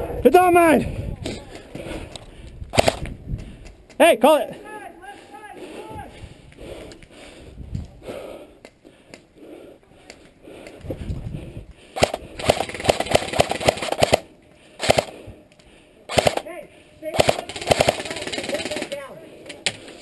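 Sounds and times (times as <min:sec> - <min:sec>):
airsoft guns firing bursts: 0:02.8 - 0:03.1, 0:12.0 - 0:15.2, 0:16.1 - 0:16.5, 0:17.1 - 0:19.1.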